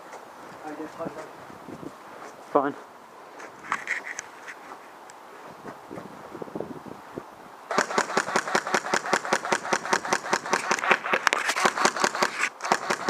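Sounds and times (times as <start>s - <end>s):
airsoft rifle firing full auto: 7.7s - 13.0s.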